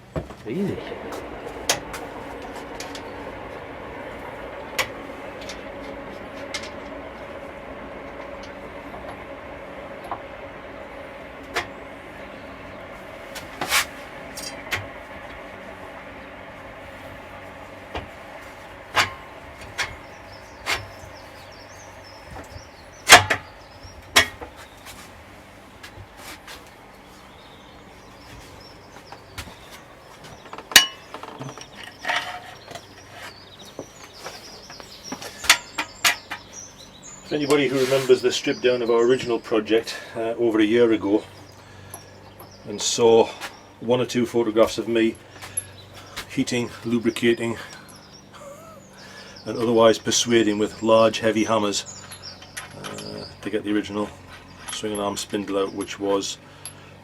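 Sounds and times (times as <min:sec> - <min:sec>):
faint birdsong: 0:00.0 - 0:57.0
steady hum: 0:00.0 - 0:57.0
metal scrape: 0:13.5 - 0:14.6, 0:37.6 - 0:38.2
knocks and clinks of tools: 0:30.4 - 0:33.3, 0:52.0 - 0:53.1.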